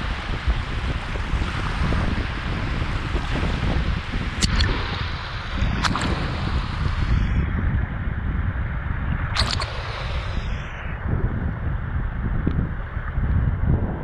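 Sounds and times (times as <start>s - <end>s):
muffled underwater river rumble: 0.0s - 14.0s
sharp splash: 4.4s - 7.3s, 9.3s - 10.5s.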